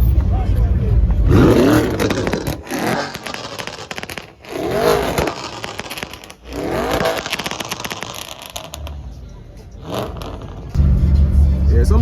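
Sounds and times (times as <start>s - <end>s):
car engine revving: 0.2s - 12.0s.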